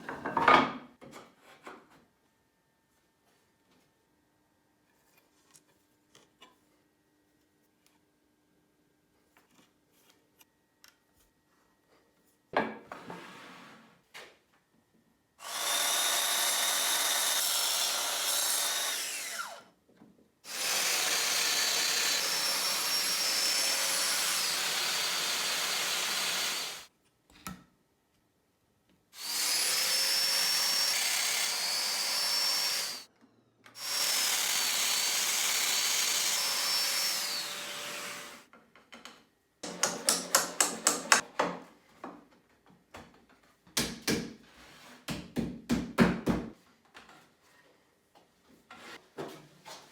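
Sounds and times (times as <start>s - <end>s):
electric drill boring into wood: 15.4s - 19.6s, 20.5s - 26.9s, 29.2s - 33.1s, 33.8s - 38.4s.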